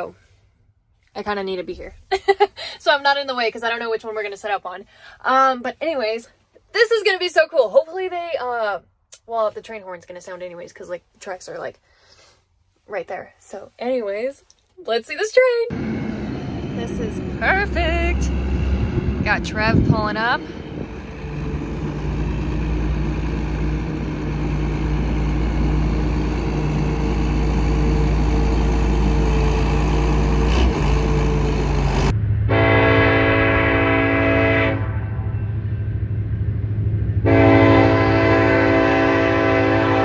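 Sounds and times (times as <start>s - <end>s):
diesel engine rumble: 15.7s - 34.2s
train air horn blasts: 32.5s - 35.3s, 37.2s - 40.0s.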